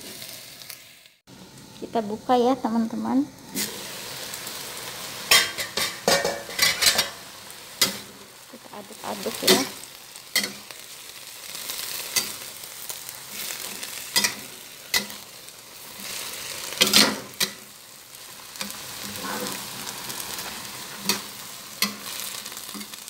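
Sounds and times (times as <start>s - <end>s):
food sizzling in a wok: 0.0s - 23.0s
spatula scraping a wok: 5.2s - 7.2s, 9.2s - 23.0s.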